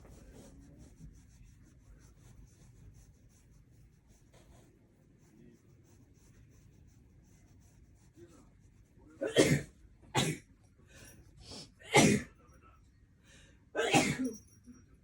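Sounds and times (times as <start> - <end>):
hand stroking fur: 0.0 - 8.8.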